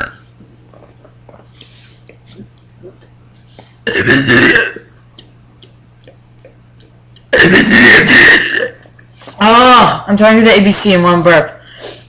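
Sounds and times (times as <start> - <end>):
person burping: 0.0 - 1.2, 3.8 - 5.3, 6.1 - 9.0.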